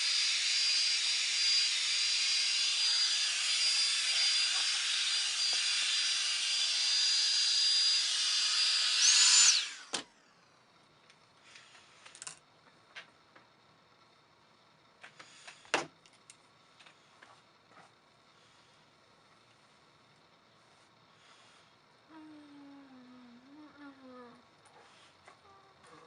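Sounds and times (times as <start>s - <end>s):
hot-air brush dryer running: 0.0s - 10.0s
motor winding down: 0.0s - 10.0s.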